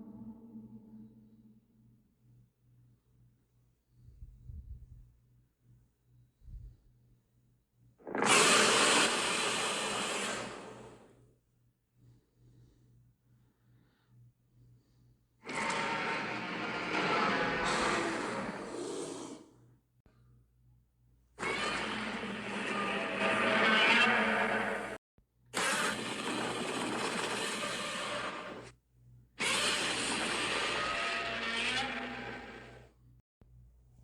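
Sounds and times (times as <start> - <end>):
harsh grating monster roar: 8.1 - 10.8, 15.5 - 19.5, 21.4 - 25.0, 29.4 - 32.8
rough gritty creature roar: 15.5 - 19.5, 22.2 - 25.0.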